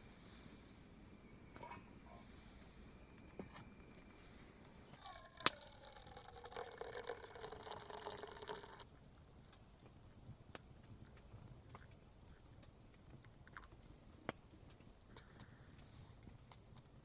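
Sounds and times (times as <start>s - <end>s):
liquid pouring into a container: 4.9s - 8.9s.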